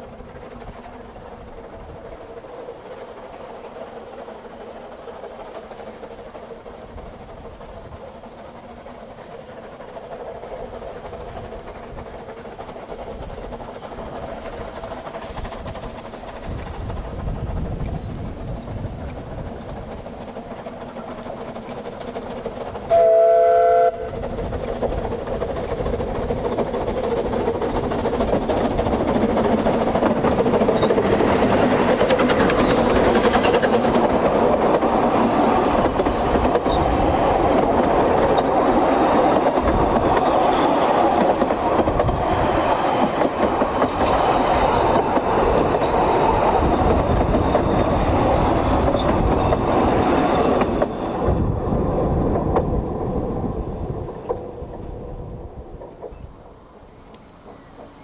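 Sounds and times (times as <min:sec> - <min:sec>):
steam locomotive approaching: 0:00.0 - 0:58.0
steam whistle blast: 0:22.9 - 0:24.2.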